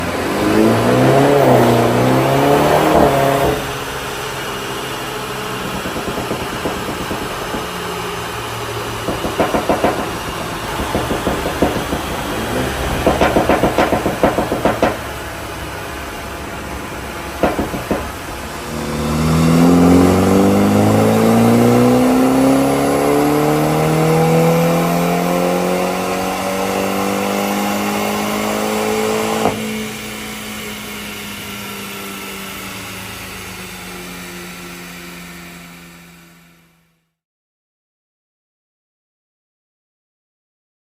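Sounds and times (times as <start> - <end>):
car engine revving: 0.0 - 36.5
exhaust pops and crackles: 5.5 - 8.1, 8.8 - 15.3, 17.4 - 18.5.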